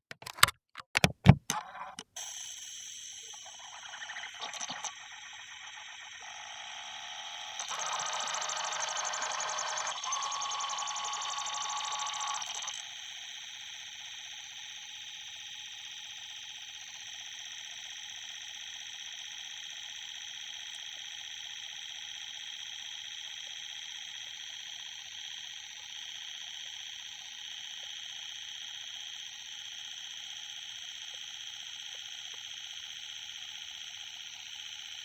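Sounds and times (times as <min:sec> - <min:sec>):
pulsing electronic whine: 0:02.4 - 0:13.6.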